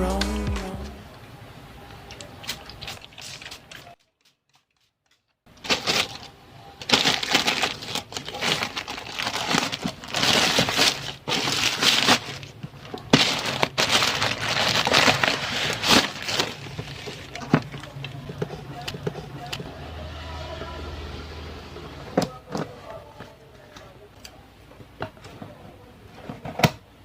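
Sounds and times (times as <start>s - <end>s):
packaging crinkling and rustling: 5.5s - 18.6s.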